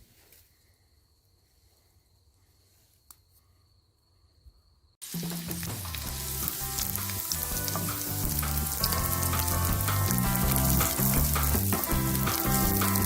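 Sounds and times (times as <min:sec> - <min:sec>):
food sizzling in frying pan: 0:05.0 - 0:13.0
background music: 0:05.1 - 0:13.0.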